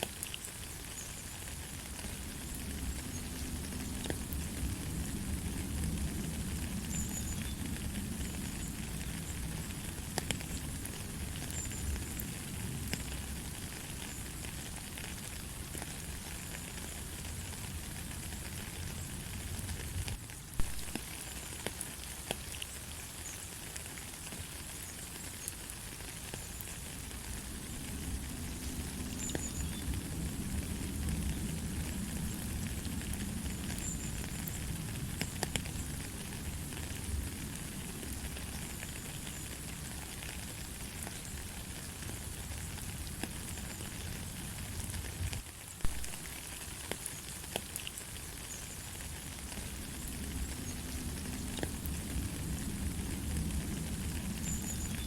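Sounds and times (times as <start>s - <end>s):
light rain pattering: 0.0s - 55.0s.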